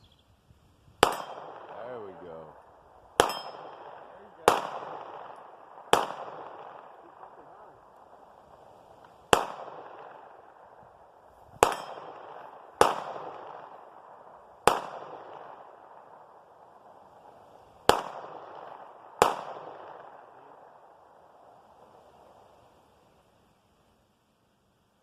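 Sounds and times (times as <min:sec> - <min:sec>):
pistol shots with echo: 0:01.0 - 0:10.8, 0:11.6 - 0:16.9, 0:17.8 - 0:21.3.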